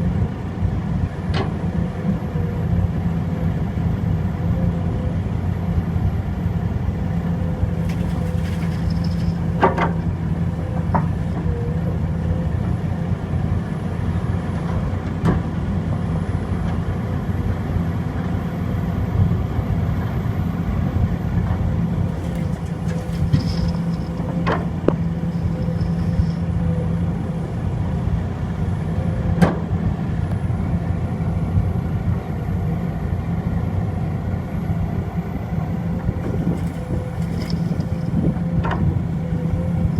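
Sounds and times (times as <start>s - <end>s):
heavy diesel engines running: 0.0s - 39.9s
sharp metal clanks: 22.1s - 26.6s.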